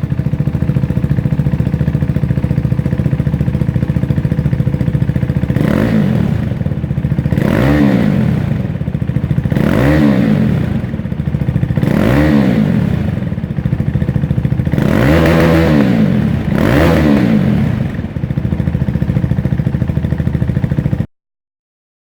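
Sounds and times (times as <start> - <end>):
motorcycle engine idling and revving: 0.0 - 21.1.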